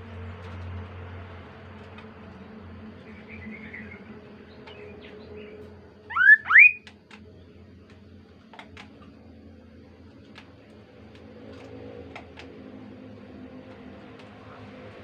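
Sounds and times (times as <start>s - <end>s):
bird whistled call: 6.1s - 6.9s.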